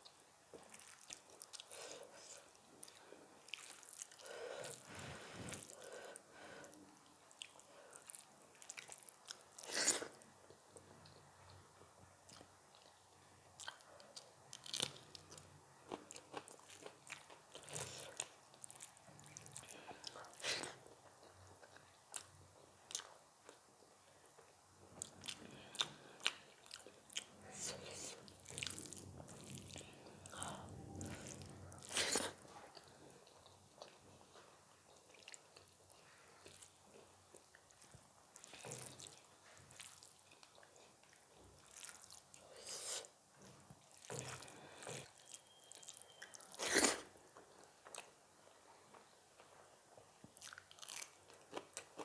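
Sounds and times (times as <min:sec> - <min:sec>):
person chewing crunchy food: 0:13.6 - 0:23.6, 0:24.4 - 0:43.1, 0:43.8 - 0:48.2, 0:50.4 - 0:52.0.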